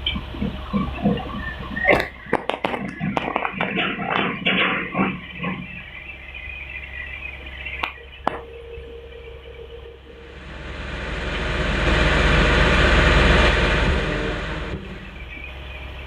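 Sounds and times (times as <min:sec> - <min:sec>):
excavator engine and hydraulics: 0:00.0 - 0:16.0
sharp clicks: 0:07.8 - 0:08.6.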